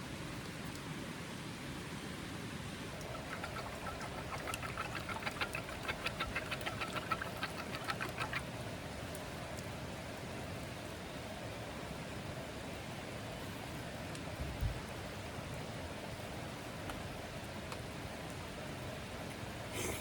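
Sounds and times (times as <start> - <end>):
steady rain hiss: 8.5 - 20.0.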